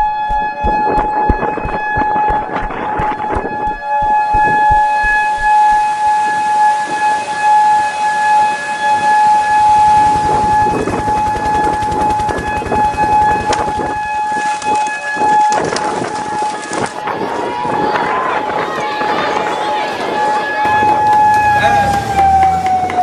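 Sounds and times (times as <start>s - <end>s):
fast low pulsing: 0.0s - 6.4s, 8.3s - 14.8s
steady alarm siren tone: 0.0s - 23.0s.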